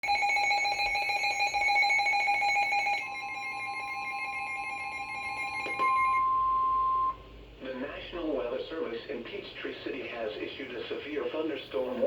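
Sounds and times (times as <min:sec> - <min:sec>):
steady alarm tone: 0:00.0 - 0:07.2.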